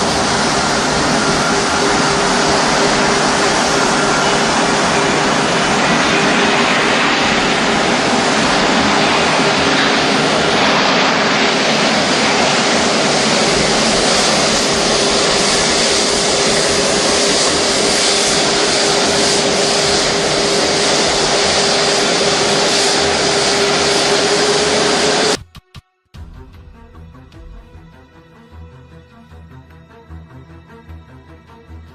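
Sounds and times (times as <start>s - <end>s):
aircraft roaring overhead: 0.0s - 25.4s.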